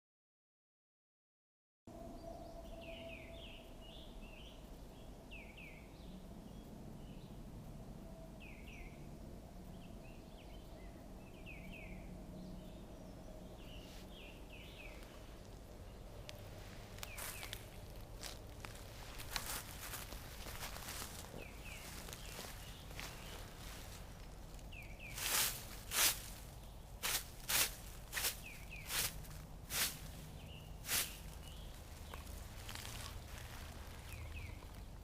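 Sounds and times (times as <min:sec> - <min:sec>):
faint outdoor background noise: 0:01.9 - 0:35.0
small bird chirping: 0:08.4 - 0:35.0.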